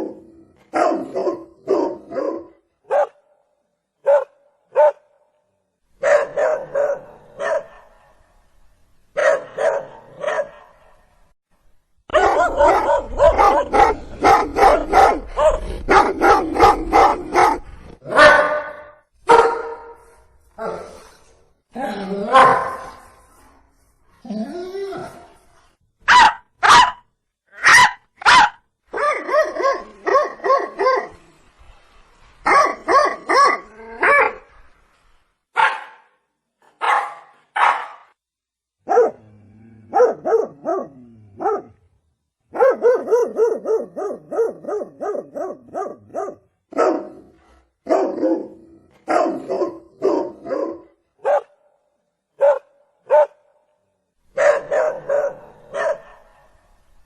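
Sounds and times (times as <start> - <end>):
dog barking: 0.7 - 3.3, 4.0 - 5.2, 6.0 - 8.2, 9.2 - 11.0, 12.1 - 20.0, 22.3 - 23.0, 26.1 - 27.0, 27.6 - 31.2, 32.4 - 34.4, 35.6 - 38.2, 38.8 - 39.3, 39.9 - 41.8, 42.5 - 51.6, 52.4 - 53.5, 54.3 - 56.6.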